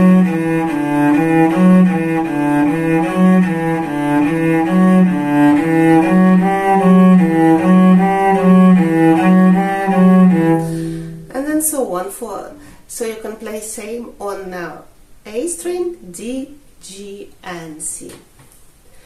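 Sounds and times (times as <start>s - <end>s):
solo cello bowing: 0.0s - 11.4s.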